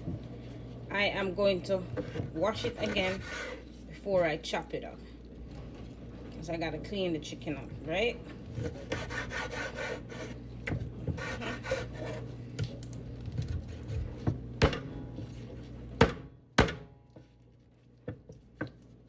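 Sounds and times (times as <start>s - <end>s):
knife scraping on cutting board: 1.9s - 3.8s, 8.5s - 10.4s, 11.1s - 12.4s.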